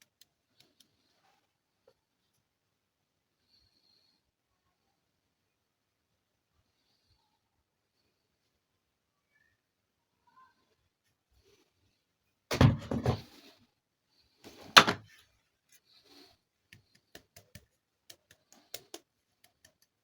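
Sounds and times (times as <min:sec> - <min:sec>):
plastic toy parts clattering: 0:12.5 - 0:13.2, 0:14.7 - 0:15.0.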